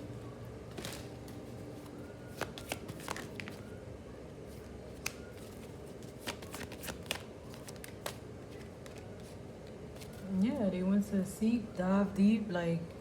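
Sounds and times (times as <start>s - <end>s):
cards being shuffled: 0.7s - 3.6s, 4.9s - 10.3s
cards snapping and slapping: 2.3s - 3.6s, 4.9s - 9.1s.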